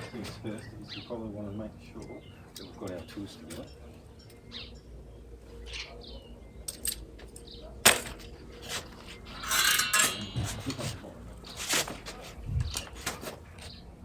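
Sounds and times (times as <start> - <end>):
metal hand tools clinking: 6.7 - 12.2
tools clattering: 6.7 - 13.8.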